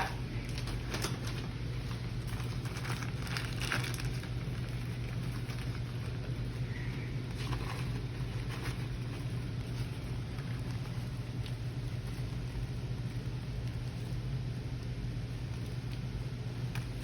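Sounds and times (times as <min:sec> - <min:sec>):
scooping sugar scraping: 0:00.0 - 0:12.7.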